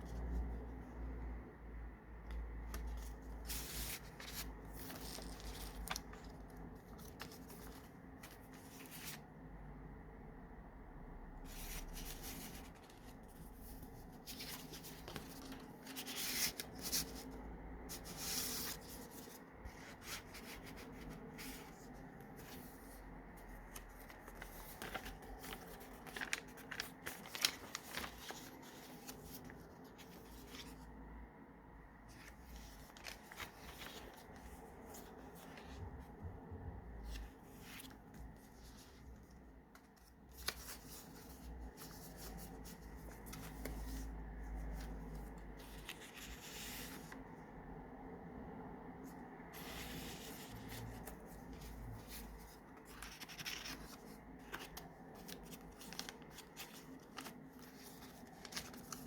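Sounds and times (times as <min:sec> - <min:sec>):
paper pages rustling: 0:02.2 - 0:09.3, 0:11.4 - 0:30.9, 0:32.0 - 0:36.2, 0:37.0 - 0:47.4, 0:49.0 - 0:59.0
page flaps: 0:11.5 - 0:30.7.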